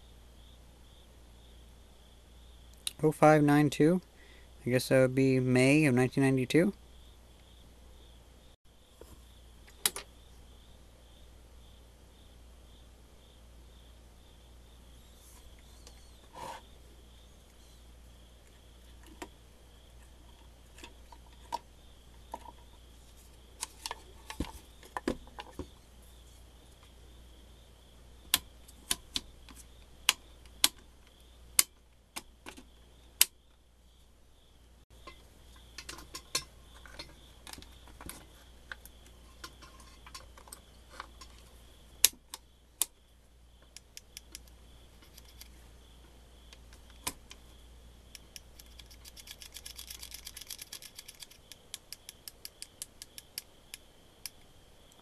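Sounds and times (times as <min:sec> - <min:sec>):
faint steady hum: 0:00.0 - 0:55.0
small metal parts clicking and clinking: 0:48.4 - 0:53.3.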